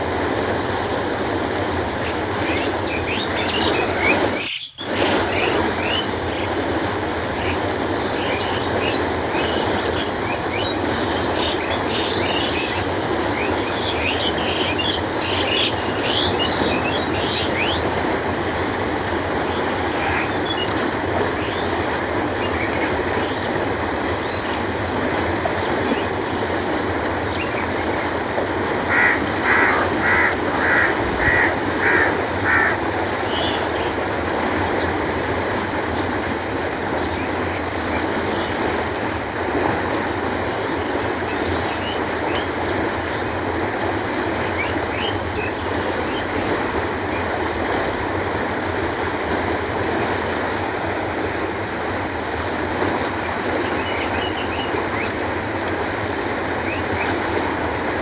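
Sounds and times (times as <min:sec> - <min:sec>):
flowing canal water: 0:00.0 - 0:58.0
small birds chirping: 0:02.0 - 0:06.5
bird calling rapidly: 0:02.0 - 0:06.6, 0:07.3 - 0:18.0, 0:19.5 - 0:21.8, 0:28.8 - 0:34.0.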